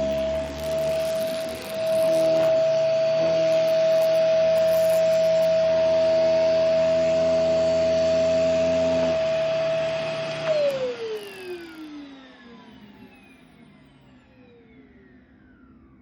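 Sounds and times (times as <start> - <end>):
low buzz: 0.0 - 11.2
vacuum cleaner motor whine: 0.0 - 16.0.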